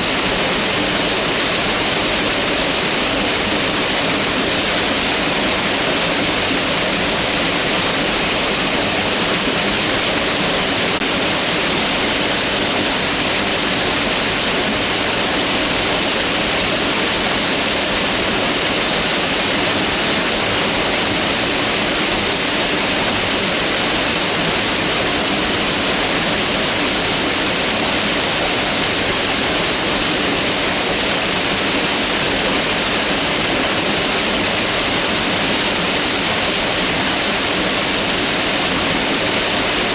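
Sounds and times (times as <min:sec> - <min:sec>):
river rushing: 0:00.0 - 0:39.9.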